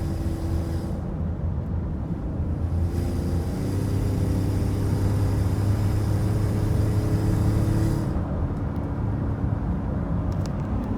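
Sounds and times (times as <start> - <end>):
engine running with low hum: 0.0 - 8.4.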